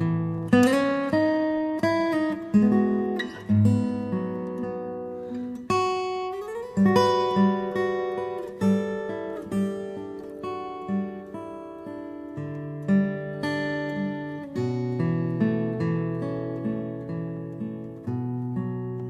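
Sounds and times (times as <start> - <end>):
acoustic guitar plucking: 0.0 - 19.0.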